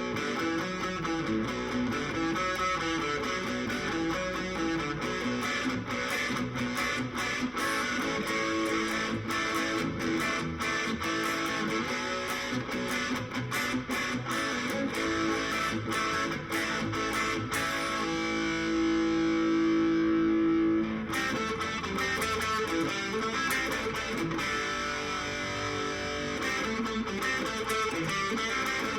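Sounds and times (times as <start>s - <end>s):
overdriven electric guitar riffs: 0.0s - 28.9s.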